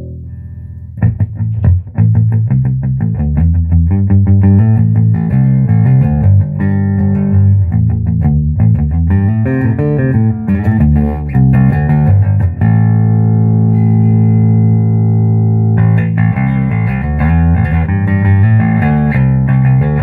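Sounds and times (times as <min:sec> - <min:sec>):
electric bass guitar playing: 0:00.0 - 0:20.0.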